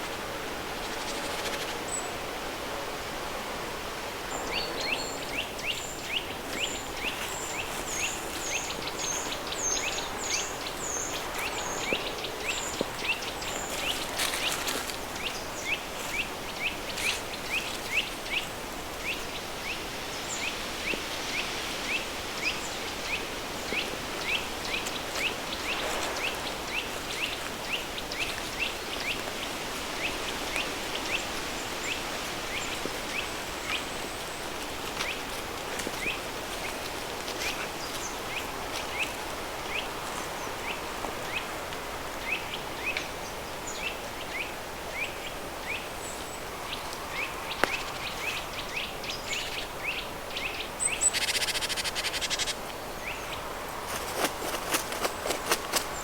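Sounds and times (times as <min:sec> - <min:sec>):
bird chirping: 0:47.7 - 0:53.3.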